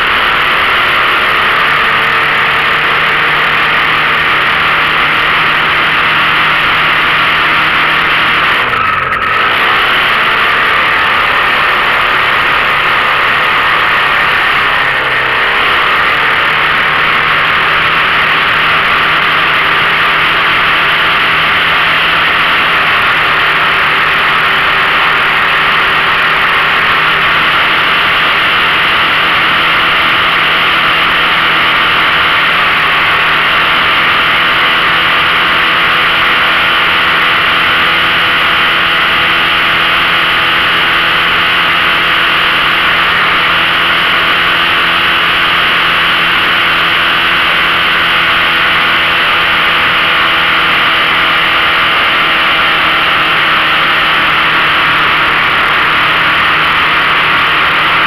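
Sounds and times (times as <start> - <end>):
outboard motor running: 0.0 - 58.0.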